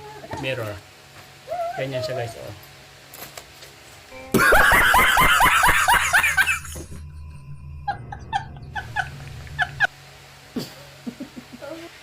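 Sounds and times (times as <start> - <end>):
person laughing: 4.3 - 7.0, 7.8 - 9.9, 10.6 - 11.8.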